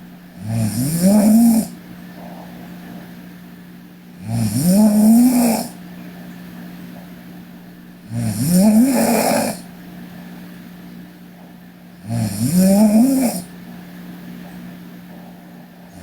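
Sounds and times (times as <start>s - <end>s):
girl snoring: 0.4s - 1.8s, 4.2s - 5.8s, 8.1s - 9.7s, 12.0s - 13.5s.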